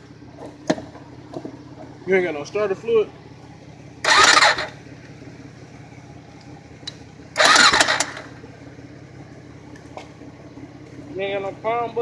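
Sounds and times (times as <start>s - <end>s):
steady low hum: 0.0s - 12.0s
engine start attempts: 4.0s - 4.8s, 7.3s - 8.4s.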